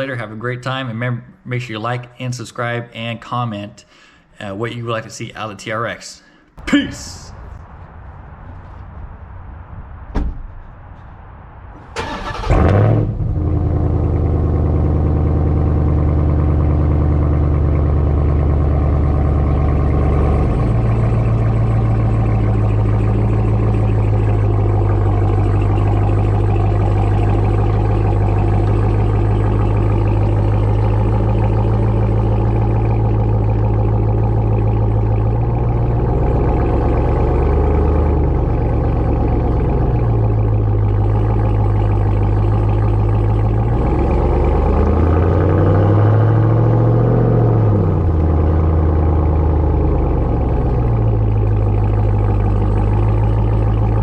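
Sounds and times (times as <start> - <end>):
engine cranking and starting: 11.8 - 14.3, 19.2 - 46.9, 47.5 - 54.0
engine idling: 11.8 - 54.0.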